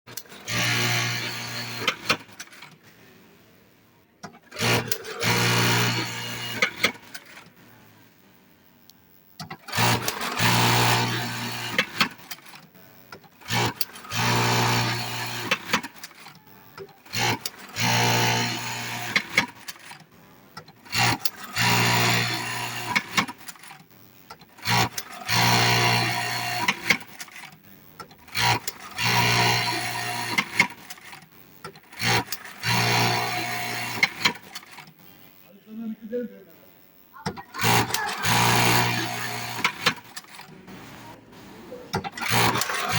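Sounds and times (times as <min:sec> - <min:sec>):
sewing machine stitching: 0:04.2 - 0:07.5, 0:09.4 - 0:20.0, 0:20.6 - 0:23.8, 0:24.4 - 0:35.0, 0:37.3 - 0:41.1, 0:41.9 - 0:42.9
machine clicks: 0:37.2 - 0:40.6, 0:41.9 - 0:42.9.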